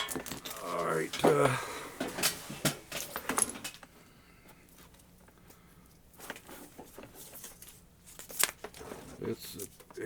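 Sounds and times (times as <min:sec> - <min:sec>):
tool parts clicking and rattling: 0:00.0 - 0:01.4.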